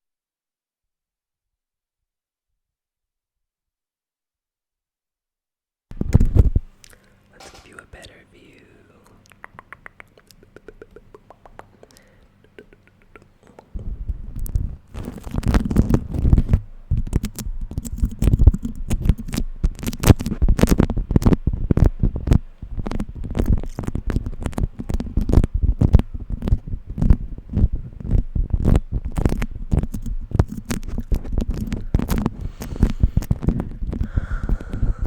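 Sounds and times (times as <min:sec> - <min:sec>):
wax wrap crackling and popping: 0:05.9 - 0:08.2, 0:13.8 - 0:35.0
handling noise: 0:07.4 - 0:08.0.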